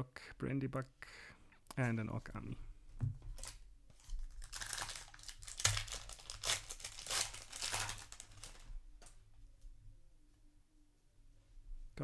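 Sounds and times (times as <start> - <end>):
foil wrapper crinkling and tearing: 3.4 - 8.7.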